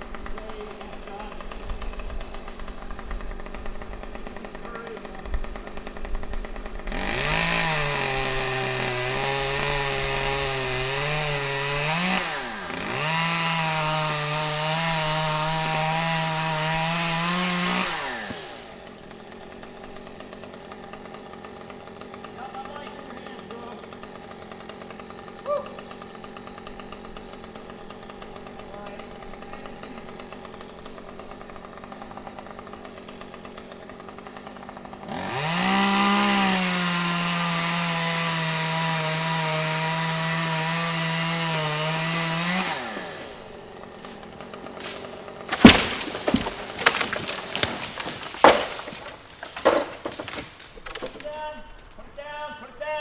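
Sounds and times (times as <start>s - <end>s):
chainsaw revving and cutting: 0.0s - 52.0s
wood cracking and breaking: 44.0s - 52.2s.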